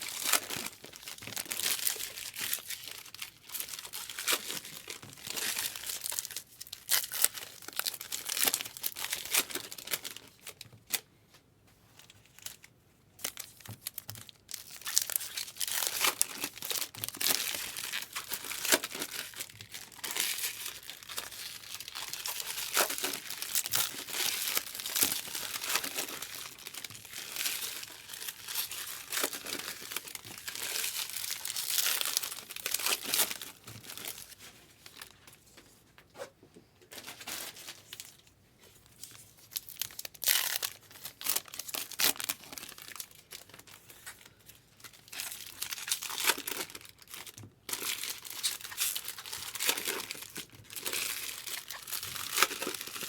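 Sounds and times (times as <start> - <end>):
card pack wrappers tearing: 13.3 - 34.4, 45.0 - 53.0.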